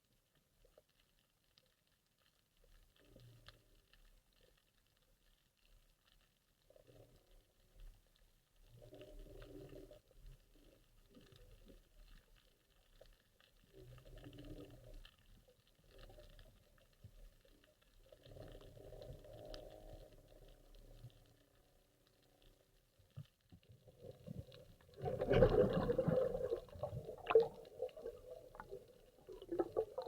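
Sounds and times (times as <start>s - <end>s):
underwater crackling clicks: 10.6s - 30.0s
low underwater rushing surges: 24.2s - 30.0s.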